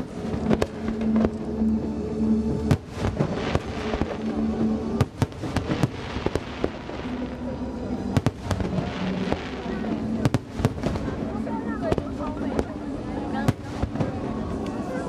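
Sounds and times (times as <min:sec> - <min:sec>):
fireworks crackling: 0:00.0 - 0:01.7, 0:02.5 - 0:15.0
fireworks bangs: 0:05.0 - 0:07.2, 0:08.1 - 0:12.8.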